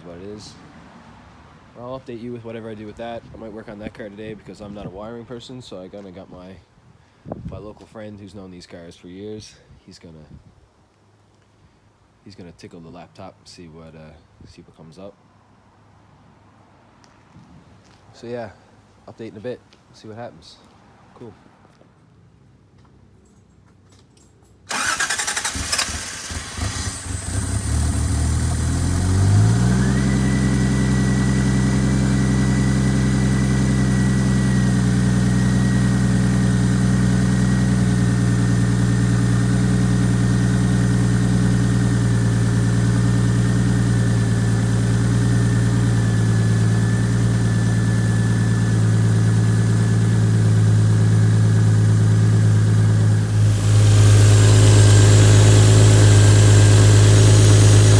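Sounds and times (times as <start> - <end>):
car engine starting and idling: 24.7 - 57.9.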